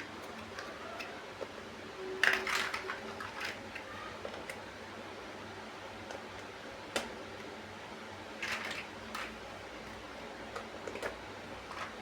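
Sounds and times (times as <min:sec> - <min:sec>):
plastic toy bricks clicking: 0:02.2 - 0:04.6, 0:08.4 - 0:09.4.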